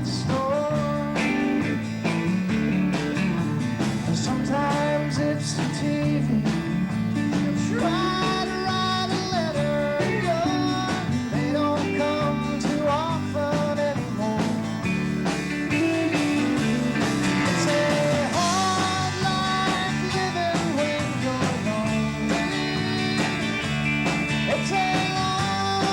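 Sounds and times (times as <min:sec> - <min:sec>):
bass guitar: 0:00.0 - 0:25.9
drums keeping a steady beat: 0:00.0 - 0:25.9
guitar: 0:00.0 - 0:25.9.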